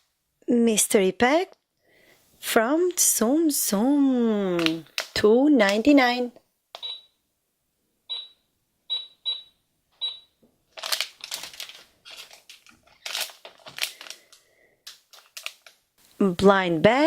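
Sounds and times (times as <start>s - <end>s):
plastic packaging crinkling: 4.6s - 5.2s, 10.7s - 16.0s
toy cash register beeps: 6.8s - 7.1s, 8.1s - 10.3s.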